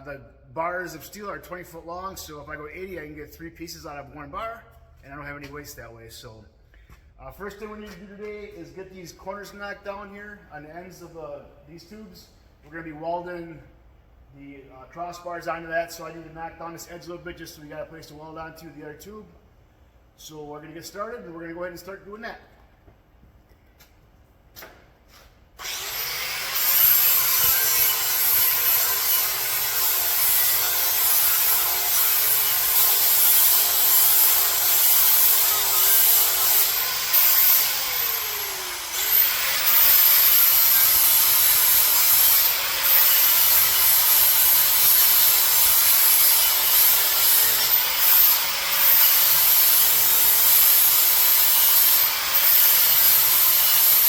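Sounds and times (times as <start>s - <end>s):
angle grinder grinding metal: 25.6s - 54.0s.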